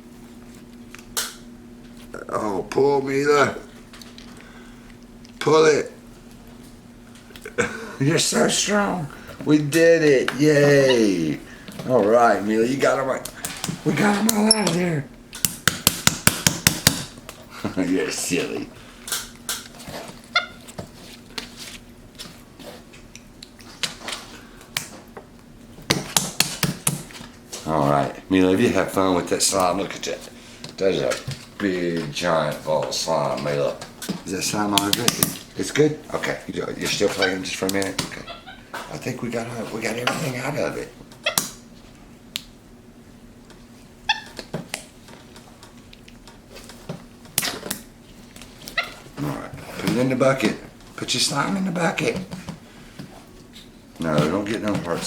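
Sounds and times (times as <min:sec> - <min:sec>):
monkey squeaking: 0:14.4 - 0:14.8, 0:20.3 - 0:20.7, 0:36.9 - 0:37.5, 0:38.2 - 0:38.7, 0:44.1 - 0:44.4.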